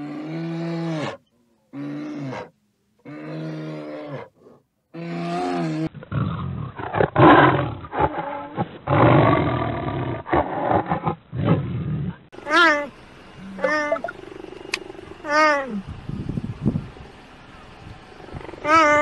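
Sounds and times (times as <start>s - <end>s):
cheetah growling and snarling: 0.0s - 12.7s, 13.4s - 16.0s, 18.2s - 19.0s
bear moaning calls: 12.4s - 16.0s, 18.3s - 19.0s.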